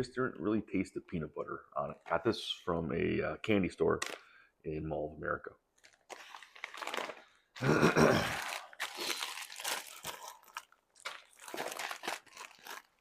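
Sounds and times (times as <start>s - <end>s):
candy wrapper crinkling: 5.8s - 13.0s.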